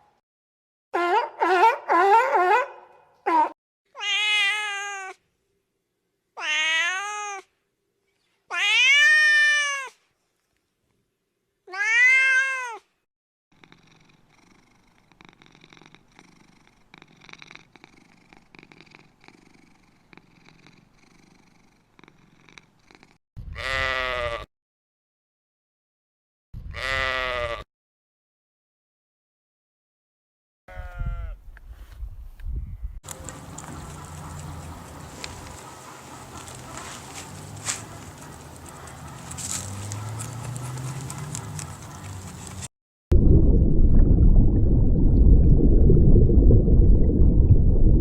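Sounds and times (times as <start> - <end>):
cat meowing: 3.9 - 5.2, 6.4 - 7.5, 8.5 - 10.0, 11.7 - 12.9
cat purring: 13.6 - 23.2, 33.1 - 42.7.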